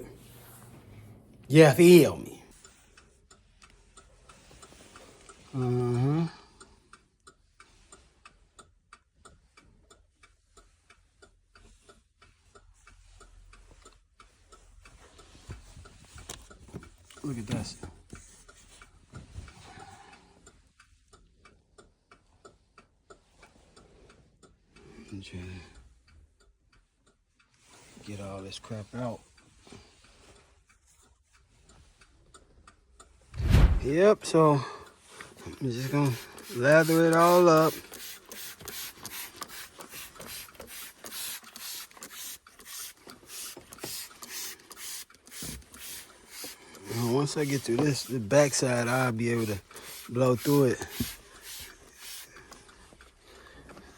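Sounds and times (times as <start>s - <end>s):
low thump: 33.4s - 33.9s
faint even ticking: 33.9s - 53.9s
brush scrubbing fabric: 35.3s - 52.3s.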